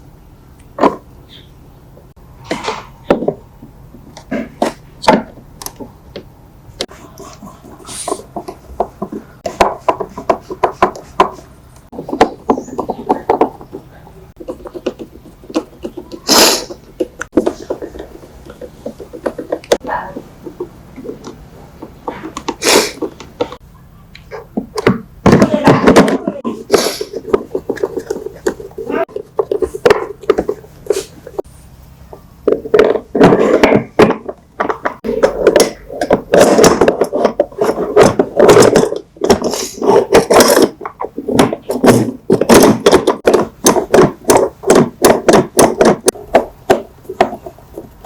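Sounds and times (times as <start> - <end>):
muffled voice: 25.3 - 26.7.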